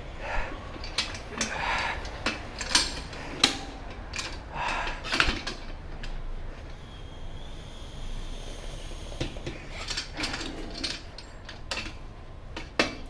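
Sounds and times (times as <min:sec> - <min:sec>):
metal clicks and clinks: 0:00.7 - 0:06.2, 0:09.4 - 0:12.0.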